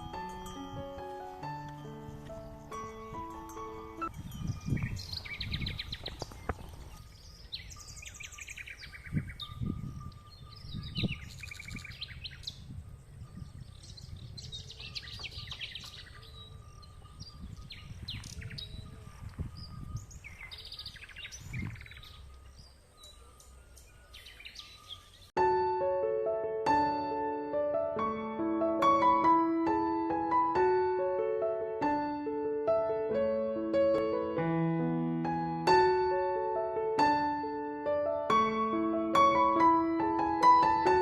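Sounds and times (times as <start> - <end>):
small birds chirping: 0.0 - 25.4.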